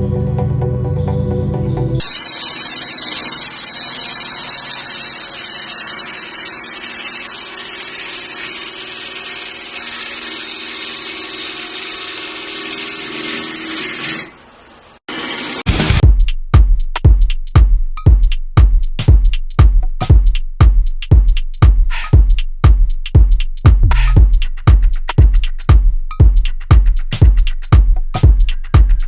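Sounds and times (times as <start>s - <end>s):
lathe cutting workpiece: 2.0s - 16.0s.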